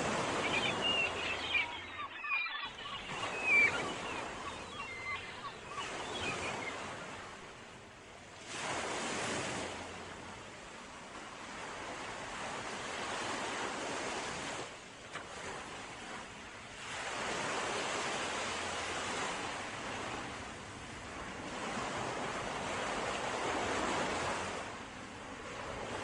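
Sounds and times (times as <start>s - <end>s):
sea waves washing in: 0.0s - 7.8s, 8.4s - 10.4s.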